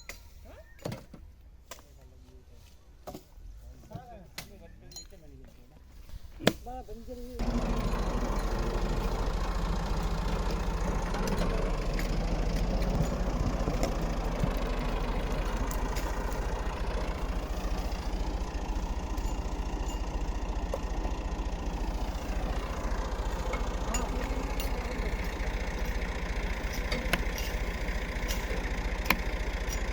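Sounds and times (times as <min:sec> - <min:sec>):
vehicle engine idling: 0:07.0 - 0:29.9.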